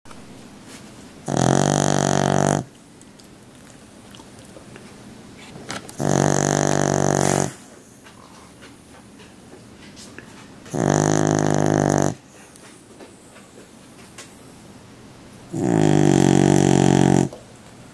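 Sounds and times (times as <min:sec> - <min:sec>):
animal snoring: 0:01.2 - 0:02.7, 0:06.0 - 0:07.7, 0:10.7 - 0:12.2, 0:15.5 - 0:17.4
animal breathing: 0:01.3 - 0:02.7, 0:04.1 - 0:08.6, 0:15.5 - 0:17.4.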